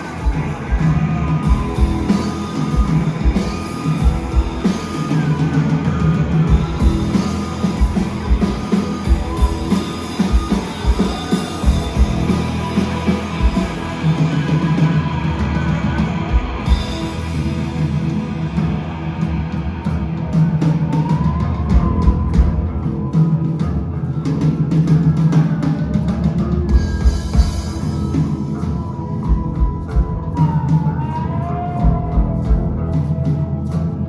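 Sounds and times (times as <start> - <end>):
bass guitar notes: 0.0 - 23.1
cymbals: 0.0 - 24.0
pounding drums: 0.0 - 24.0.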